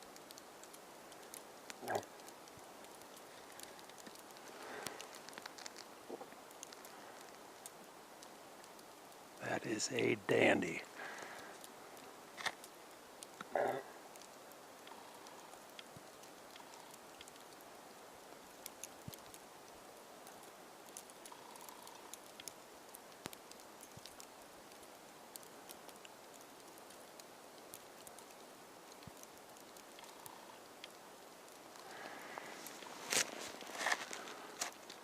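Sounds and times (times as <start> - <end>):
snow pattering on camera: 0.0 - 17.6, 30.9 - 35.0
faint hiss: 0.0 - 35.0.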